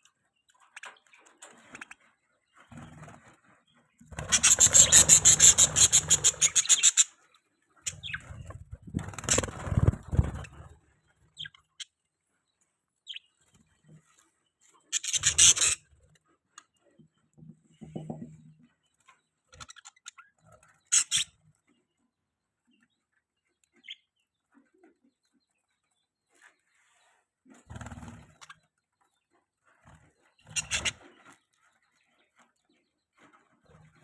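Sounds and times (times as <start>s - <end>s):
budgerigars chirping: 4.1s - 7.2s, 7.9s - 10.7s, 14.9s - 15.8s, 30.3s - 31.1s.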